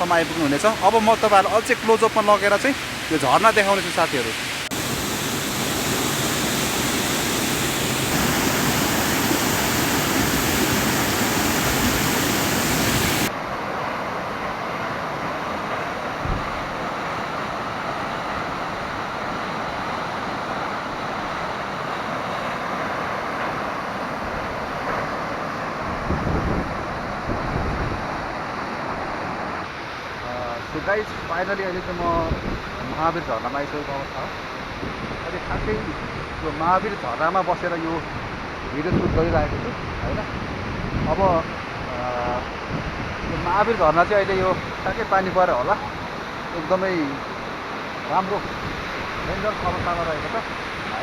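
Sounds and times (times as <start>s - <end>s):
waterfall rushing: 0.0s - 26.1s, 43.4s - 51.0s
wind buffeting microphone: 25.8s - 29.0s, 38.1s - 45.1s.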